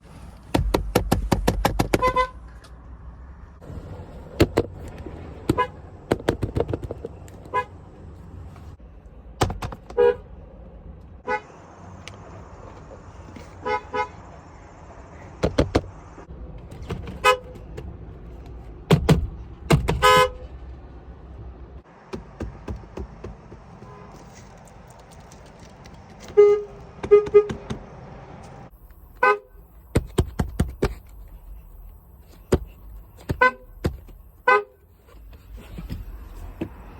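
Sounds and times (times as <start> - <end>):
car horns honking: 1.9 - 2.5, 5.4 - 6.0, 7.4 - 7.9, 9.9 - 10.3, 11.2 - 11.6, 13.5 - 14.3, 17.0 - 17.7, 19.8 - 20.5, 26.2 - 28.0, 29.0 - 30.1, 32.6 - 34.9.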